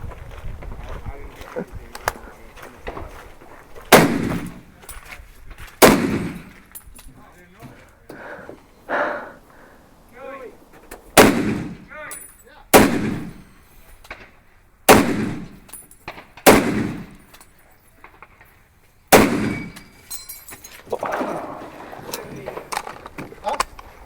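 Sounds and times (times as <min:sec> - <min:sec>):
echoing gunshots: 0:03.9 - 0:04.7, 0:05.8 - 0:06.7, 0:11.1 - 0:12.0, 0:12.7 - 0:13.6, 0:14.9 - 0:17.3, 0:19.1 - 0:20.0.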